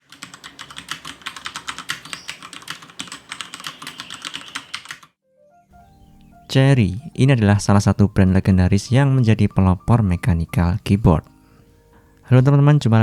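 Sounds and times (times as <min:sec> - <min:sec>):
fast mechanical keyboard typing: 0:00.0 - 0:05.1
soft music notes: 0:05.2 - 0:13.0.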